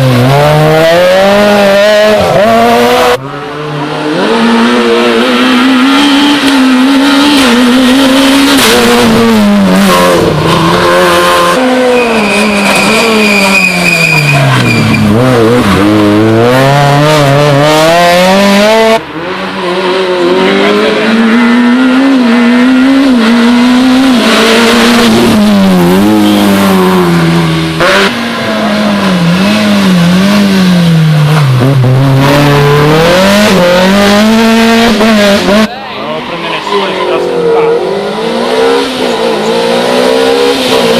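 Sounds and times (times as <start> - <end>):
rally car engines revving: 0.0 - 40.9.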